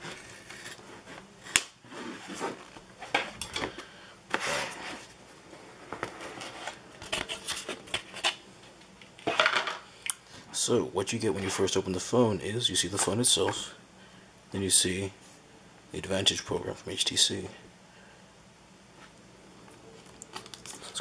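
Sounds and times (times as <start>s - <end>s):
cardboard packaging rustling: 0.0s - 3.4s, 5.8s - 8.4s.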